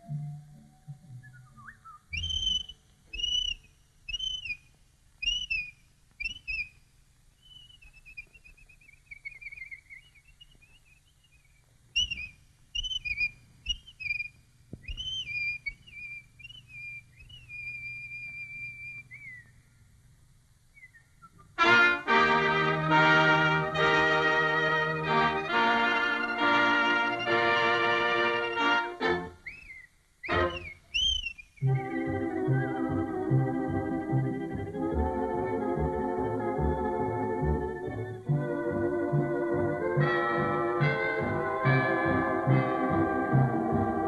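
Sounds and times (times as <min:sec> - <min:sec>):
whistled bird calls: 0:00.7 - 0:06.8, 0:07.4 - 0:19.8, 0:20.7 - 0:21.6, 0:29.3 - 0:32.8.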